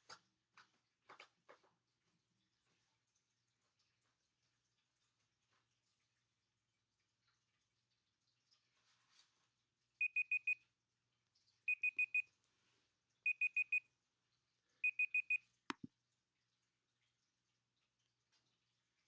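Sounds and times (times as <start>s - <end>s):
timer alarm beeping: 10.0s - 10.6s, 11.7s - 12.2s, 13.3s - 13.8s, 14.8s - 15.4s.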